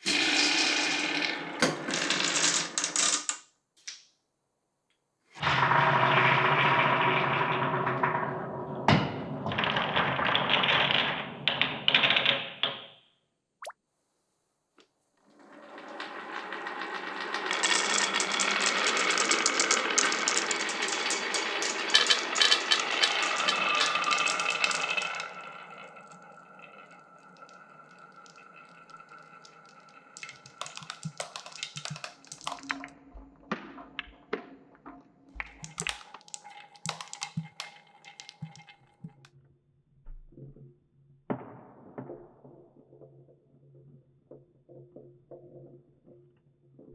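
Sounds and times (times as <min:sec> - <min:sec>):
marbles rattling down wooden track: 0:00.0 - 0:03.4, 0:15.3 - 0:33.2, 0:35.4 - 0:39.3
marbles clicking on track pieces: 0:00.1 - 0:03.5, 0:15.7 - 0:32.9, 0:35.4 - 0:39.3.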